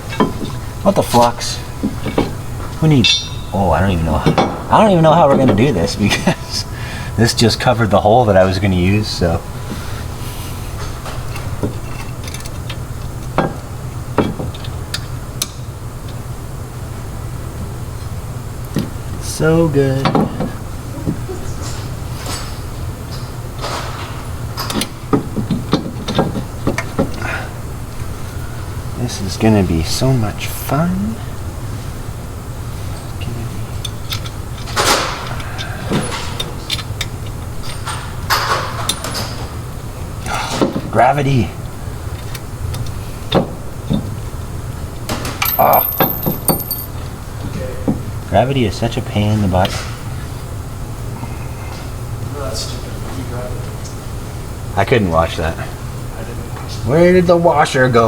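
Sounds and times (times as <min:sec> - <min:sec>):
steady low hum: 0:00.0 - 0:58.0
metal tools clinking and knocking: 0:00.1 - 0:04.7, 0:33.8 - 0:39.4, 0:45.3 - 0:47.0.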